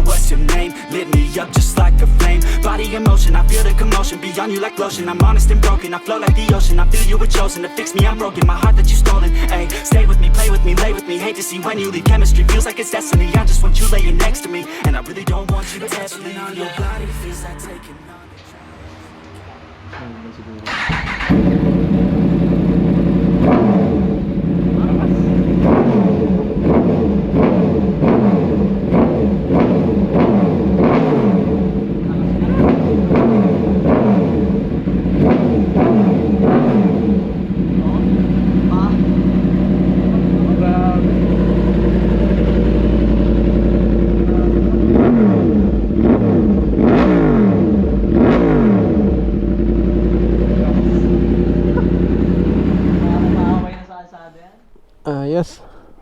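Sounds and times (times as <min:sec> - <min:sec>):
motorcycle engine idling and revving: 0:00.0 - 0:00.6, 0:01.2 - 0:04.1, 0:05.2 - 0:11.0, 0:12.0 - 0:15.6, 0:20.6 - 0:53.8
electronic music with steady beat: 0:00.0 - 0:18.4
falling bass sweep: 0:38.6 - 0:53.8.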